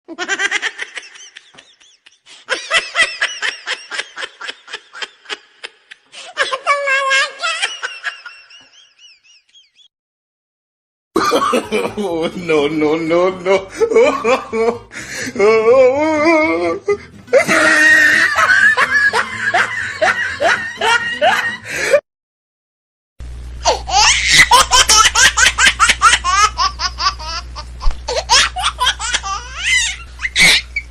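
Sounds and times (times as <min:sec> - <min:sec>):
high-pitched laughter: 0:00.1 - 0:09.9, 0:13.7 - 0:14.8, 0:15.8 - 0:21.7, 0:23.6 - 0:30.9.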